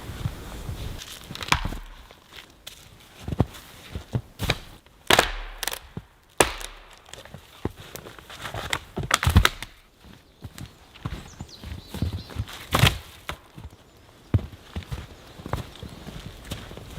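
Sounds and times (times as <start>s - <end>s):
rustling: 0.0s - 4.8s
wood knocking and cracking: 1.0s - 2.5s, 4.1s - 9.8s.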